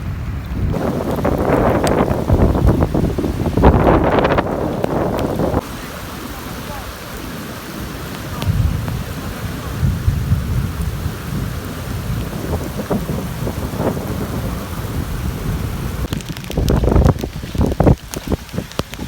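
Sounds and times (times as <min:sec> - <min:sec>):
heavy low rumbling: 0:00.0 - 0:18.0
steady rain hiss: 0:00.0 - 0:19.0.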